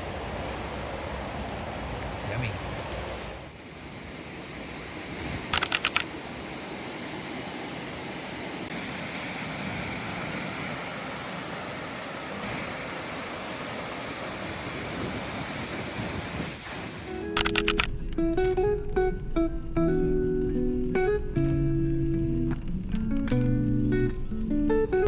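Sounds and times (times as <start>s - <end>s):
water rushing: 0.0s - 17.8s
sharp clicks: 5.5s - 6.2s, 17.2s - 18.2s.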